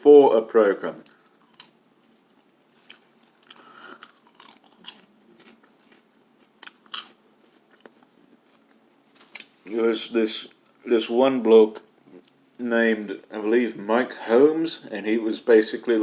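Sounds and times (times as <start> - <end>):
person chewing crunchy snack: 1.0 - 9.5.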